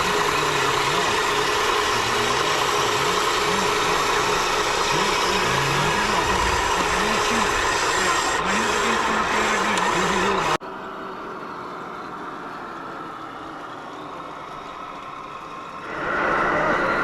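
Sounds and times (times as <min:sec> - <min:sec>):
noisy rumble: 0:00.0 - 0:10.6
toy motor whine: 0:00.0 - 0:10.6
steady running noise: 0:00.0 - 0:17.0.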